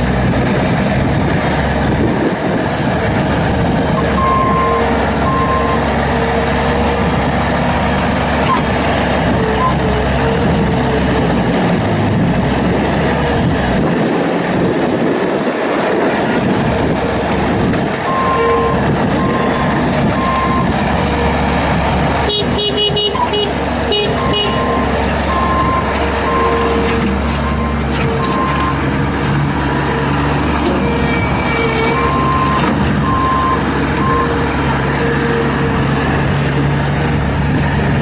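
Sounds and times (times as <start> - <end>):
diesel engine running: 0.0 - 38.0
short beeps: 4.2 - 5.8
sharp horn toots: 22.3 - 24.8.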